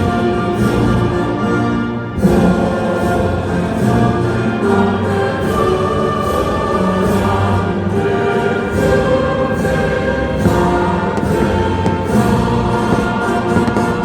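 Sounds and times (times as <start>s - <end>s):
choir singing held notes: 2.2s - 14.0s.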